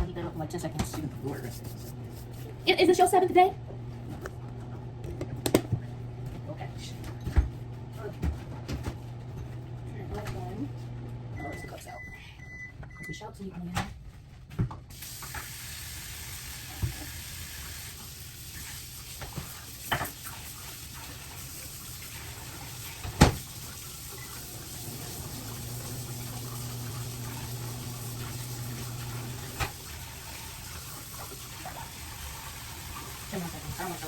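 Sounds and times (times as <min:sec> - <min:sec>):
water running from a tap: 0:14.9 - 0:34.0.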